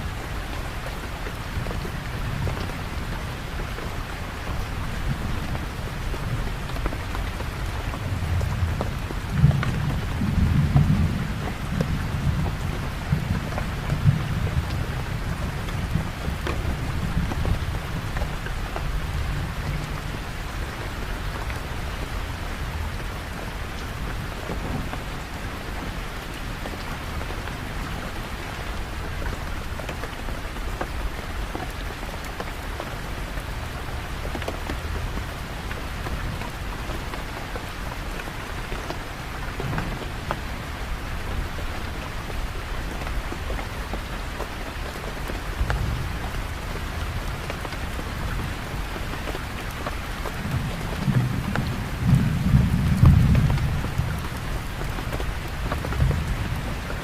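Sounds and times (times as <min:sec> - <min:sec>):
steady rain: 0:00.0 - 0:57.0
thunder rumbling: 0:50.4 - 0:57.0.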